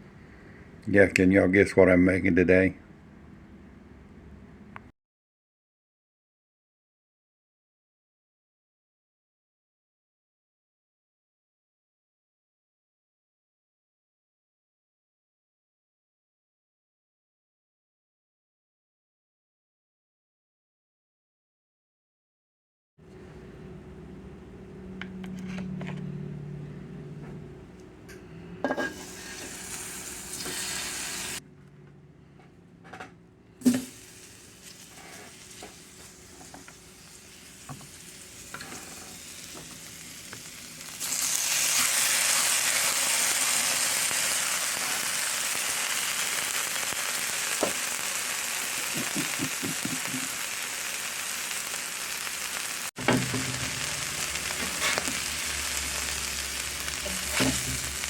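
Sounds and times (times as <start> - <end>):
food sizzling in a pan: 28.7 - 31.4, 33.6 - 58.0.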